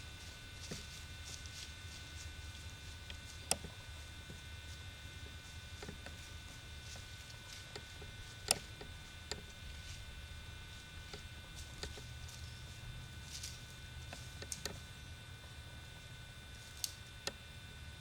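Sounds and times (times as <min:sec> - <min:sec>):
steady hum: 0:00.0 - 0:18.0
faint clicks and ticks: 0:05.8 - 0:10.1, 0:11.0 - 0:14.9, 0:16.5 - 0:17.4.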